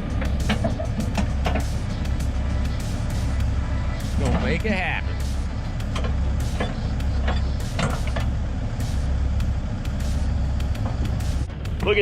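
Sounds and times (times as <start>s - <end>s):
metal clanks and knocks: 0.0s - 2.0s, 5.8s - 8.4s
excavator diesel engine running: 0.0s - 12.0s.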